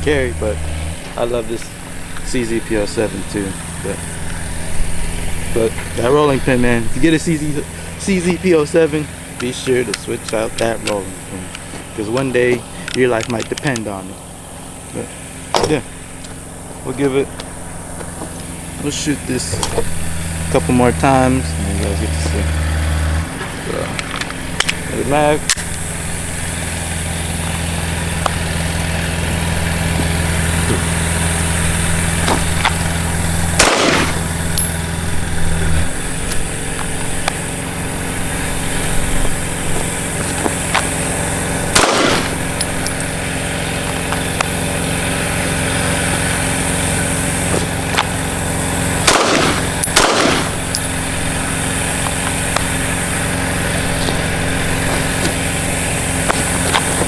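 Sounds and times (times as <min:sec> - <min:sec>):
pistol shots with echo: 0:33.6 - 0:34.4, 0:41.7 - 0:42.5, 0:49.0 - 0:50.7.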